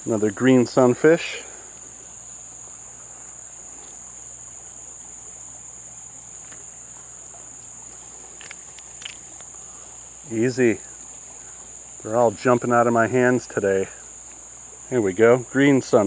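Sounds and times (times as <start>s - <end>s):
insect chorus buzzing: 0.0s - 16.0s
faint ticks: 6.2s - 11.8s, 14.1s - 14.8s.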